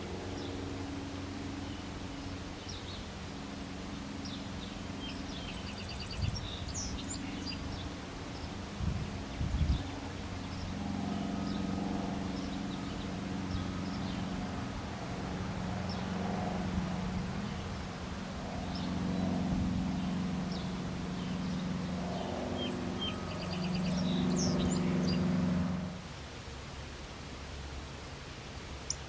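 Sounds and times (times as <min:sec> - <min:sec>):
vehicle traffic drone: 0:09.7 - 0:26.2
small birds chirping: 0:18.6 - 0:25.4.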